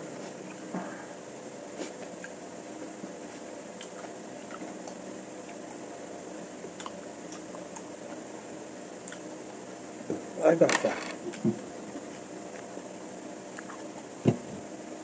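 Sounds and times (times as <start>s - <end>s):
fan hum: 0.0s - 15.0s
wet chewing and lip-smacking: 3.8s - 5.8s, 6.7s - 7.9s, 13.5s - 14.0s.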